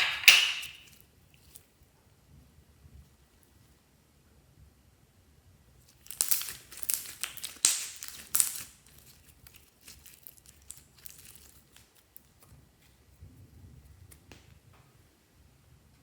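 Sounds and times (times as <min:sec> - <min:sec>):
slime materials crinkling and crackling: 0:05.8 - 0:13.0.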